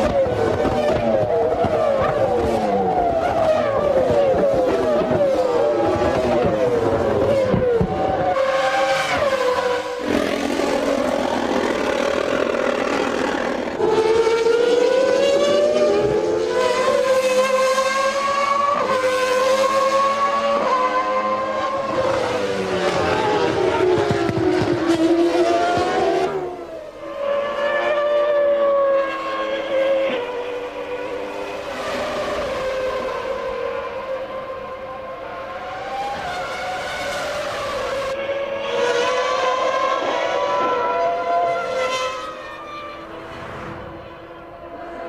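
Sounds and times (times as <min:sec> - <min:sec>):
race car engines at high revs: 0:00.0 - 0:45.0.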